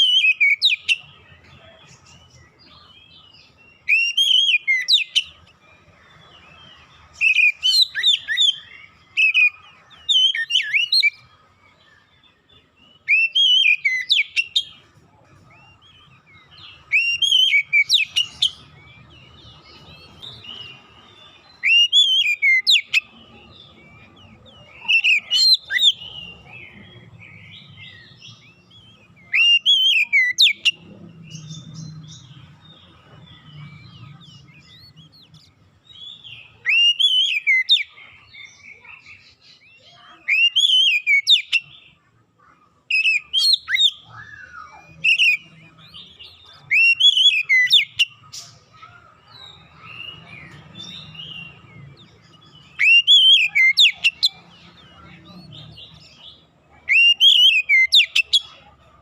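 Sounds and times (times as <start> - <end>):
bird singing whistled phrases: 3.8 - 5.3, 13.0 - 14.7, 21.5 - 23.1, 27.4 - 30.8, 36.0 - 37.9, 39.9 - 41.7, 42.9 - 48.2, 49.9 - 56.0, 56.9 - 58.6.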